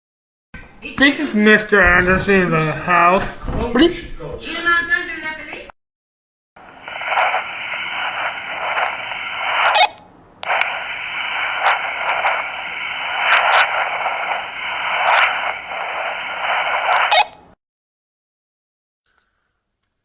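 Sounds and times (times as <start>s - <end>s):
walkie-talkie static hiss: 6.6s - 17.5s.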